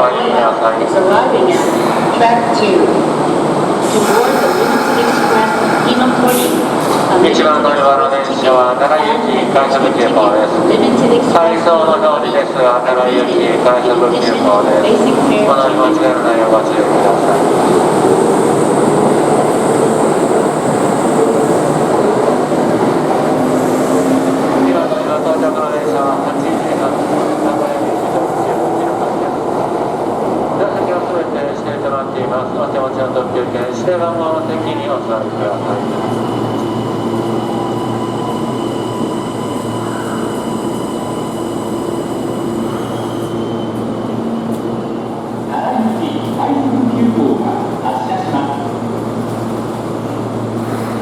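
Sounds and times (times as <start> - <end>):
train wheels rumbling: 1.2 - 8.0
steady tones: 3.8 - 7.6.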